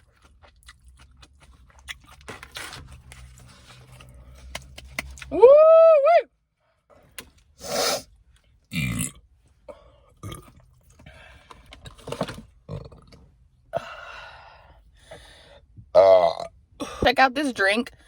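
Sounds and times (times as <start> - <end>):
woman burping: 16.0 - 17.2.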